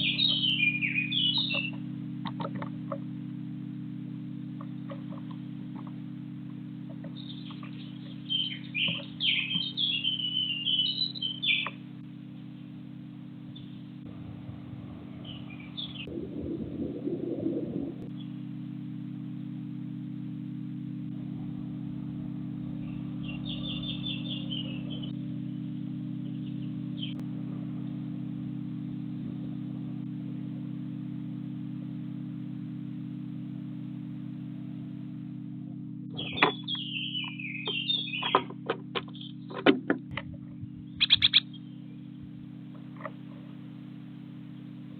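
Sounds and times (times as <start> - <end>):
songbird chirping and whistling: 0.0 - 1.8, 7.0 - 11.9, 15.0 - 18.4, 22.8 - 25.2, 26.2 - 27.2, 36.2 - 39.5, 40.6 - 42.3
steady low hum: 0.0 - 44.9.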